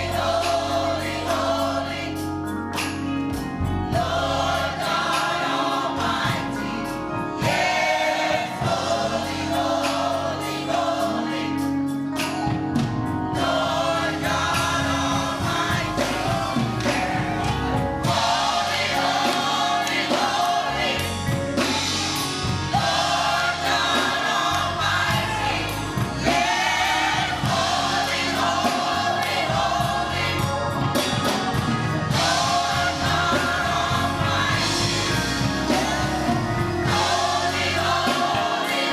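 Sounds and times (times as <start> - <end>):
gospel choir singing: 0.0 - 38.9
steady beat: 13.4 - 38.9.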